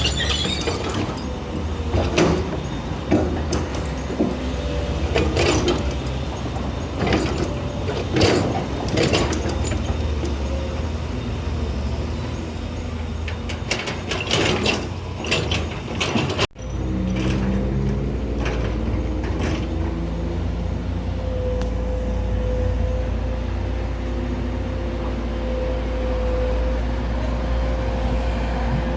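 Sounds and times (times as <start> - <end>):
metallic clanks and knocks: 0.0 - 4.5, 5.1 - 10.6, 13.1 - 20.4
diesel machinery running: 0.0 - 28.9
steady engine drone: 0.0 - 28.9.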